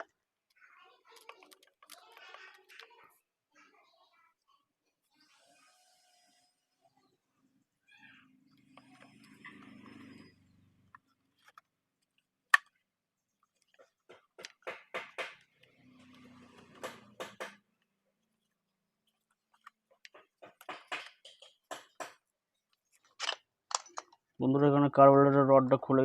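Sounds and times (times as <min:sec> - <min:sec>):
small parts clicking and tapping: 0:00.0 - 0:03.0, 0:10.8 - 0:24.4.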